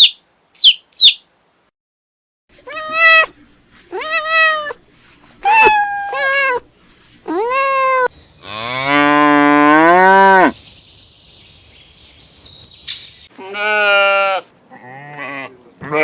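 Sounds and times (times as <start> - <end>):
cat meowing: 2.6 - 4.8, 5.4 - 6.6, 7.3 - 8.1
cow mooing: 8.4 - 10.6, 13.4 - 16.0.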